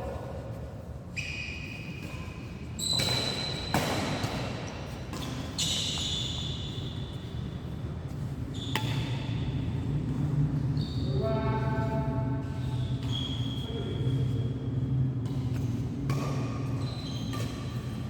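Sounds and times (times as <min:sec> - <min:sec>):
shoes squeaking: 0:01.1 - 0:07.2, 0:12.7 - 0:13.9, 0:16.6 - 0:18.0.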